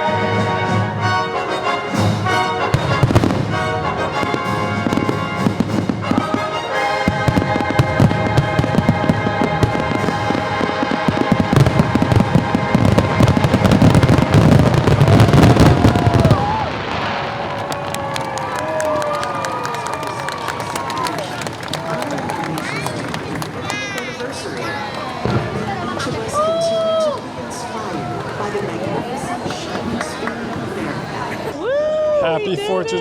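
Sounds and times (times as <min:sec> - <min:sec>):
orchestral music over speakers: 0:00.0 - 0:15.0
crowd voices: 0:00.0 - 0:33.0
fireworks bursting: 0:01.9 - 0:30.7.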